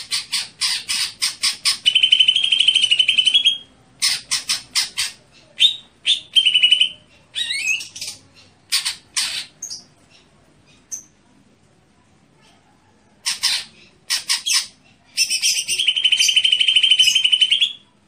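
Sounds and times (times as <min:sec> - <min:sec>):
bird harsh squawks: 0:13.2 - 0:17.8.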